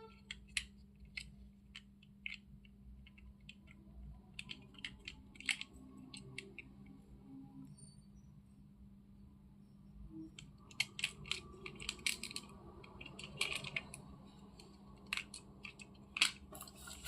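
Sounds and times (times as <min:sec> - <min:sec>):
toy car clicking and tapping: 0:00.0 - 0:07.0, 0:10.3 - 0:17.0.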